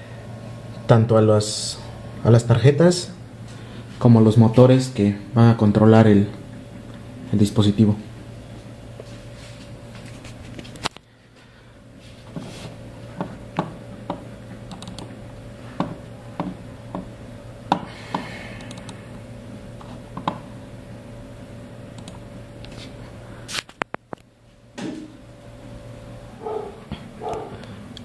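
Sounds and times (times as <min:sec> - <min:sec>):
steady electrical hum: 0:00.0 - 0:28.0
keyboard and mouse clicks: 0:13.2 - 0:15.1, 0:17.7 - 0:19.0, 0:22.0 - 0:22.2.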